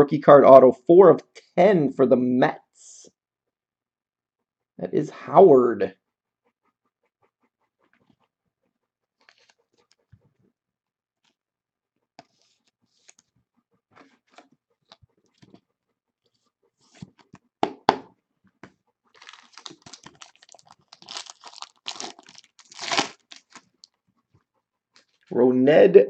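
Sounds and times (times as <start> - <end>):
plastic wrapping tearing and crinkling: 19.2 - 23.8.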